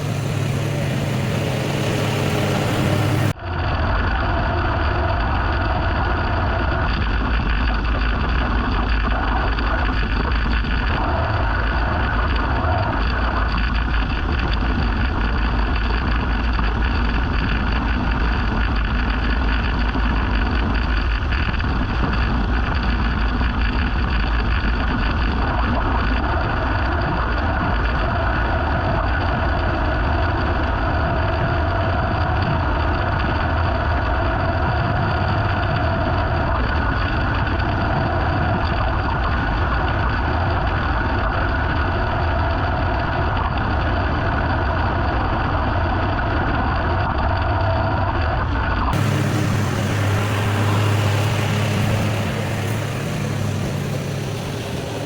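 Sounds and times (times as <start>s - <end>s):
small petrol engine running: 0.0s - 3.4s, 49.0s - 55.0s.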